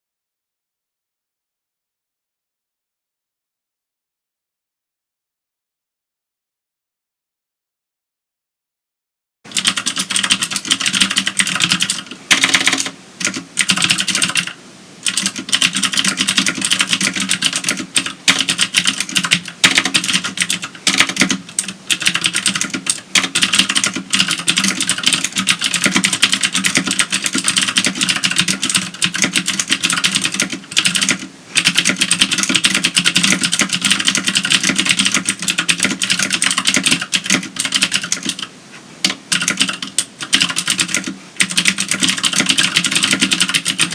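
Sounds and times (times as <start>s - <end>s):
clicky mechanical keyboard typing: 9.5s - 43.9s.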